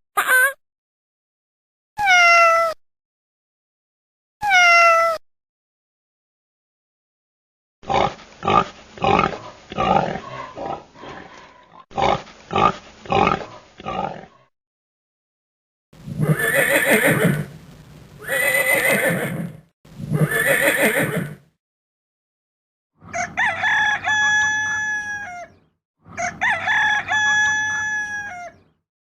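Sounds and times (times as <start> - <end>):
horse neighing: 16.2 - 17.6, 18.2 - 21.4.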